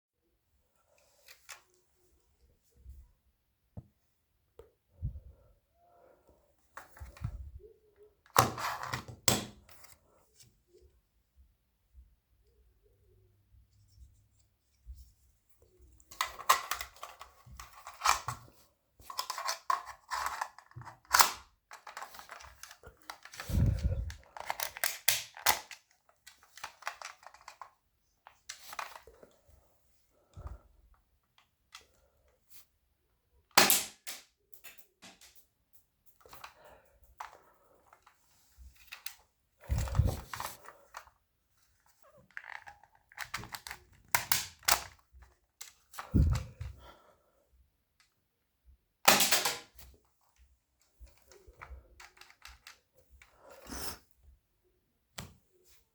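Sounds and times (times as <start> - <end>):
clicking and handling noises: 0.8 - 1.9, 6.7 - 10.9, 14.9 - 29.5, 30.2 - 32.4, 33.6 - 46.9, 49.1 - 53.8.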